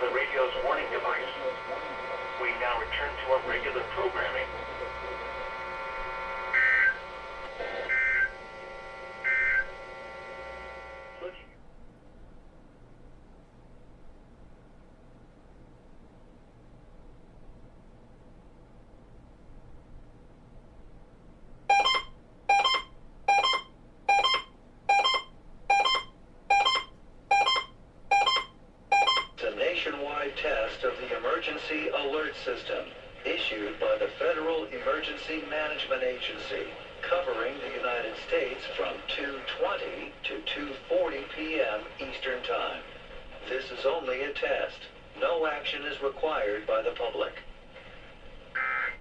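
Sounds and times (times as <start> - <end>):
steady background hum: 0.0 - 49.0
buzzing two-tone data warble: 3.2 - 11.4
electronic alarm beeping: 6.5 - 7.0, 7.9 - 8.4, 9.2 - 9.8, 21.7 - 29.4.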